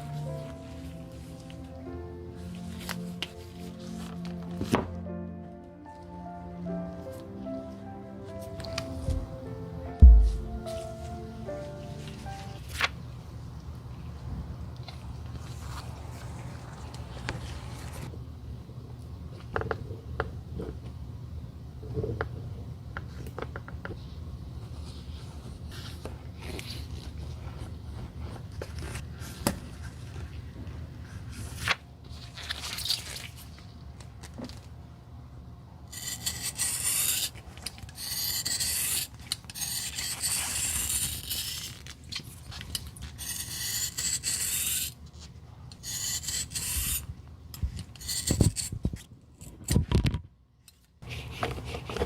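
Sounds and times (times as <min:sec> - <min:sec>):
abrasive tool rasping on shoe: 0:43.2 - 0:45.0, 0:45.8 - 0:47.1, 0:47.9 - 0:48.8.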